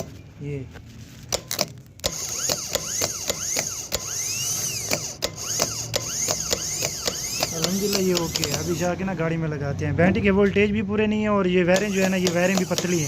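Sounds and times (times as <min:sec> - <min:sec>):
starter motor whirring and clicking: 0:01.3 - 0:09.0, 0:11.7 - 0:13.0.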